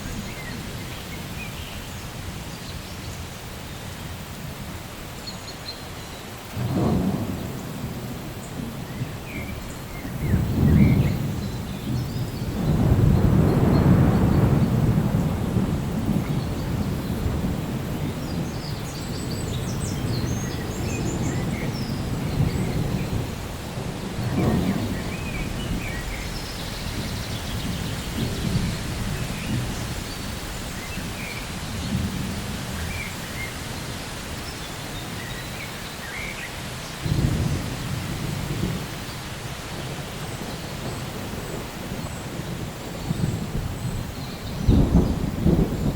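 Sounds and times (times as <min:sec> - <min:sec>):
steady rain: 0:00.0 - 0:45.9
thunder rumbling: 0:06.6 - 0:33.9, 0:37.0 - 0:45.9.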